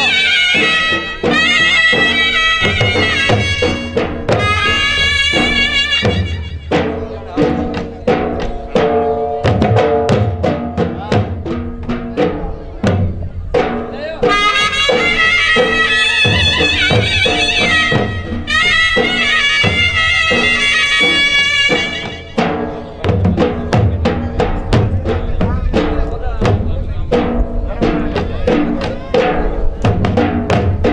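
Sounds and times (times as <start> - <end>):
reedy wind instrument melody: 0.0 - 7.4, 14.0 - 24.7
drum beat: 0.0 - 30.9.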